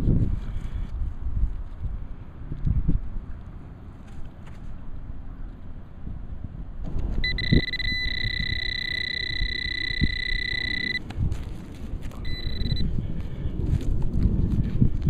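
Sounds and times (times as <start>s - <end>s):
low wind rumble: 0.0s - 15.0s
metal detector high tone: 7.2s - 11.0s, 12.2s - 12.8s.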